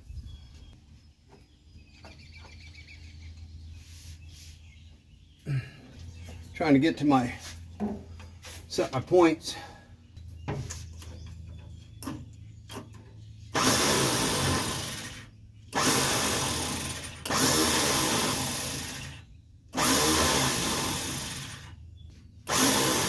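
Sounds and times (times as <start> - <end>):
motor running in short bursts: 13.5 - 21.8, 22.5 - 23.0.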